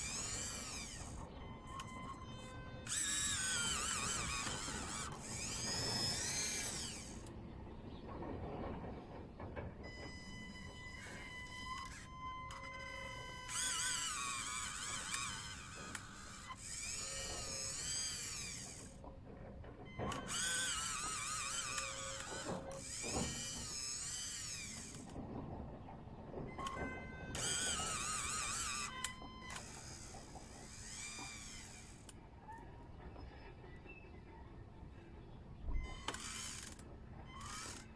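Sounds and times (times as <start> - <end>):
electric motors whining: 0.0 - 7.8, 9.4 - 33.4, 35.6 - 37.9.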